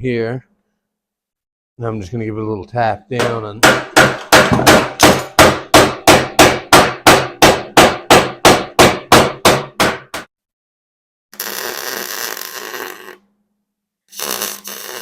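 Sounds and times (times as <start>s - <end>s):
hammer striking steel frame: 3.2s - 10.3s.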